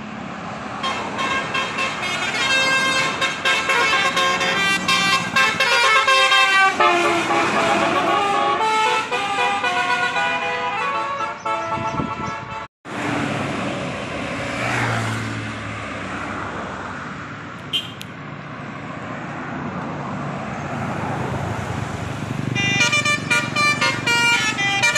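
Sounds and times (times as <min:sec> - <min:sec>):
bus engine: 0:00.0 - 0:24.9
passing road traffic: 0:00.0 - 0:24.9
multi-tone bus horn melody: 0:00.7 - 0:12.7, 0:17.7 - 0:18.1, 0:22.5 - 0:24.9.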